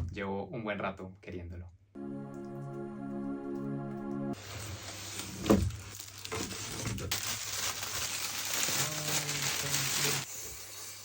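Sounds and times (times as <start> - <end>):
packaging rustling and crinkling: 4.4 - 10.3.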